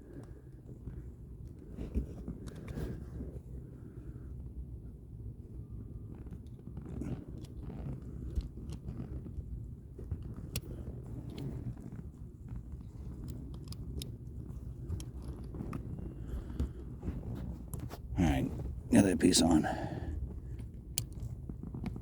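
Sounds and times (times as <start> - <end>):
small clicks and scrapes of hands: 0.1 - 3.3, 6.2 - 18.1, 20.5 - 22.0.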